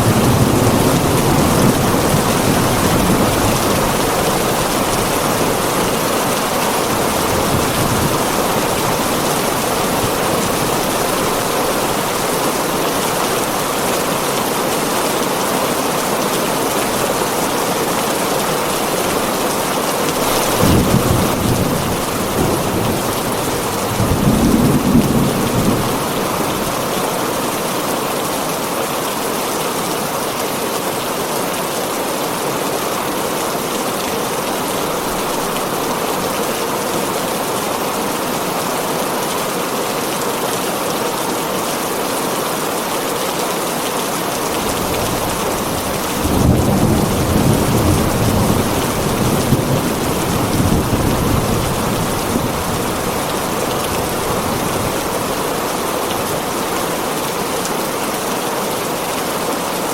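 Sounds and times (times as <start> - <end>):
thunder rumbling: 0.0 - 13.7, 20.2 - 26.9, 44.6 - 55.3
heavy rain on a tin roof: 0.0 - 59.9.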